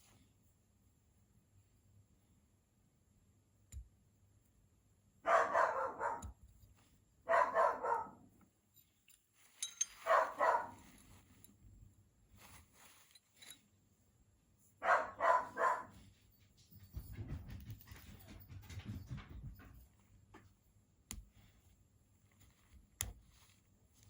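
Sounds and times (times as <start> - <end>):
dog barking: 5.2 - 6.4, 7.3 - 8.3, 10.0 - 10.9, 14.8 - 16.1.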